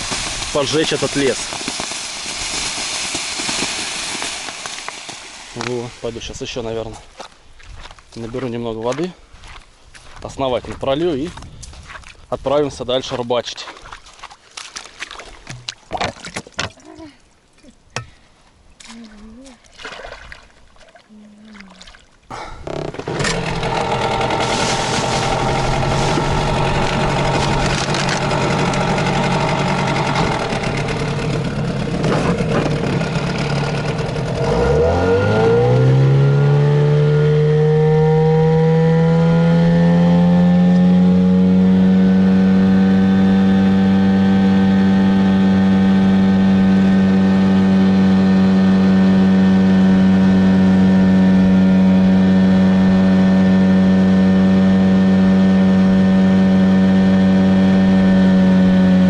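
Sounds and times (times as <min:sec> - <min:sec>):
outboard motor running: 0:00.0 - 0:06.6, 0:21.0 - 0:59.0.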